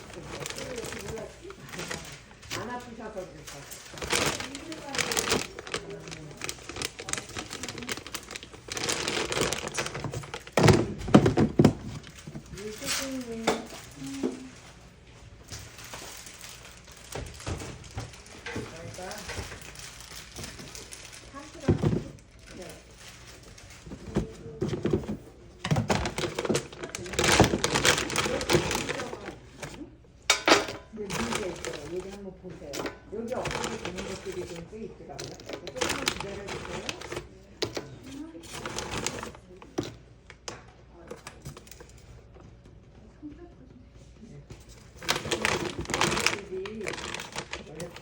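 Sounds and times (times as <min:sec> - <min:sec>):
objects clattering and clicking: 0:00.0 - 0:14.7, 0:15.4 - 0:42.7, 0:44.6 - 0:48.0
rustling: 0:00.0 - 0:14.8, 0:15.4 - 0:25.3, 0:25.9 - 0:29.9, 0:44.6 - 0:48.0.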